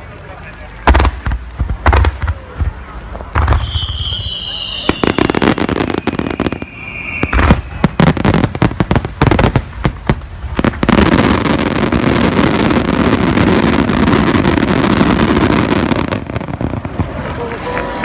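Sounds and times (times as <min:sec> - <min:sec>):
fireworks bangs and cracks: 0:00.0 - 0:18.0
fireworks dense crackle: 0:00.0 - 0:18.0
firework whistling: 0:03.4 - 0:08.6.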